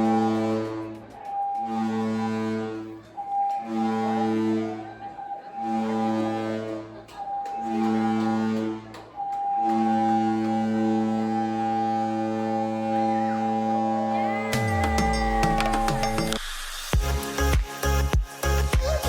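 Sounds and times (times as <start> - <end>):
ship's horn blasts: 9.5 - 14.6
higher single tone: 12.4 - 16.4.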